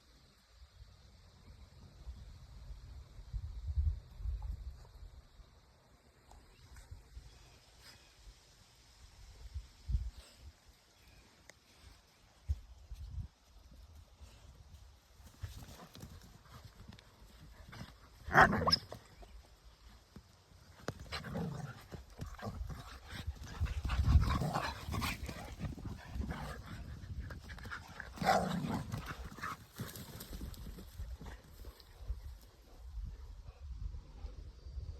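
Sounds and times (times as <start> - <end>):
dogs thumping and scuffling: 20.1 - 31.8.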